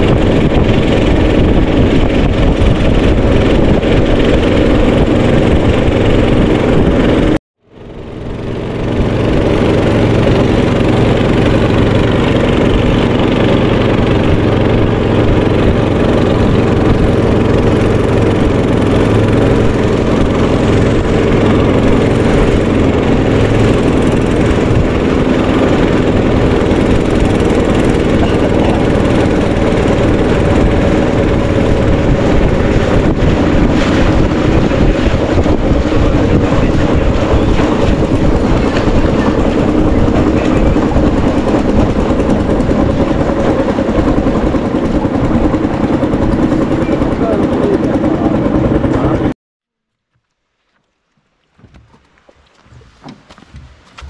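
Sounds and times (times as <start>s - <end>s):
boat engine running: 0.0s - 54.0s.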